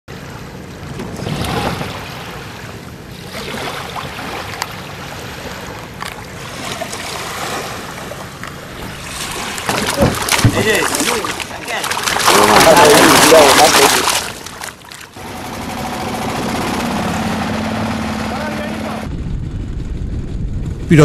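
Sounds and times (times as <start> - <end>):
wind: 0.0 - 21.0
water sloshing around a boat: 0.1 - 19.0
knocks on a boat: 9.6 - 10.8.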